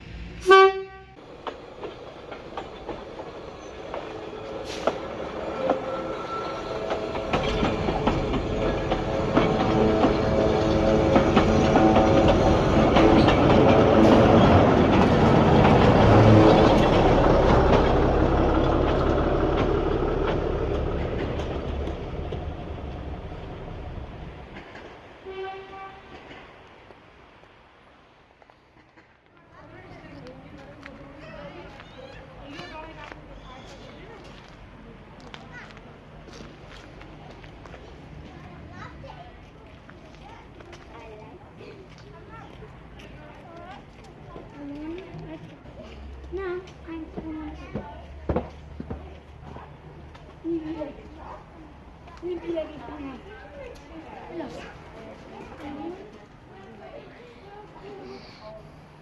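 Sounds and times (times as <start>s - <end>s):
train horn blast: 0.4s - 1.2s, 5.5s - 14.9s, 25.2s - 26.3s
train wheels clicking over rails: 1.2s - 56.7s.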